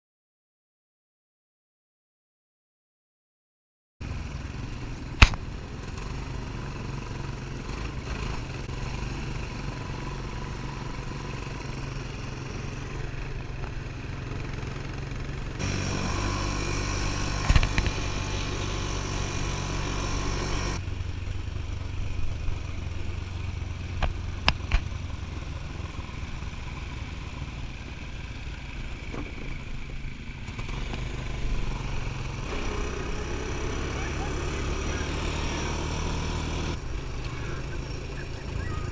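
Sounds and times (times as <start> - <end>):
atv engine revving: 4.0 - 38.9
knocks and clatter over rough ground: 17.3 - 18.1, 23.9 - 25.1, 29.0 - 31.3.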